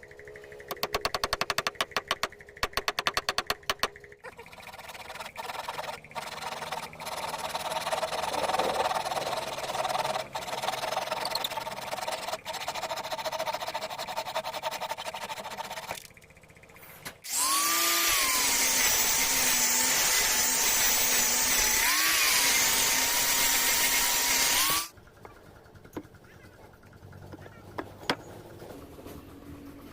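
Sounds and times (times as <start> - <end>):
power tool cutting wood: 4.6 - 16.0, 17.2 - 24.9.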